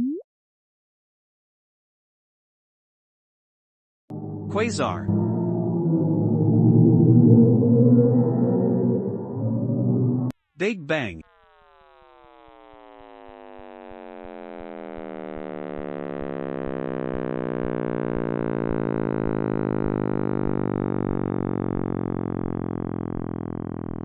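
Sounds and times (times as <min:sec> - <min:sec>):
synthesized drone of stacked tones: 0:04.1 - 0:11.2.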